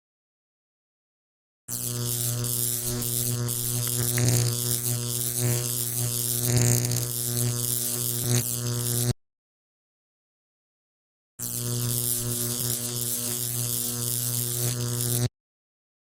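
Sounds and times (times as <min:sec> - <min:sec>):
electrical arcing crackle: 0:01.7 - 0:09.2, 0:11.4 - 0:15.3
high-voltage electrical hum: 0:01.7 - 0:09.2, 0:11.4 - 0:15.3.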